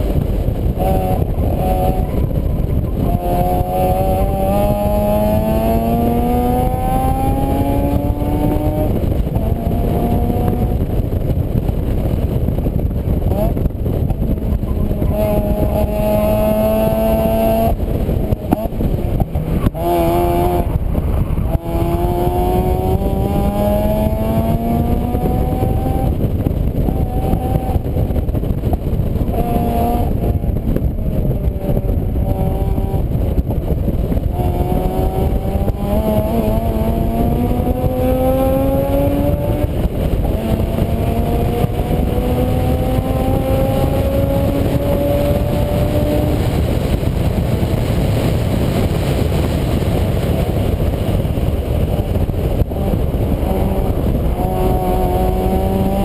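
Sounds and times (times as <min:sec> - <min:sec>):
low rumble of road noise: 0:00.0 - 0:56.0
vehicle engine accelerating: 0:00.0 - 0:56.0.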